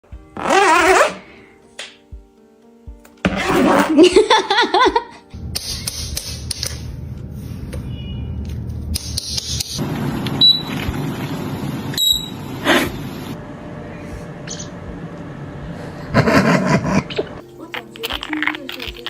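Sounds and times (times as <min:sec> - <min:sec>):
wavering laugh-like voice: 0:03.7 - 0:05.2, 0:16.1 - 0:17.3
mixed noise: 0:05.4 - 0:19.0.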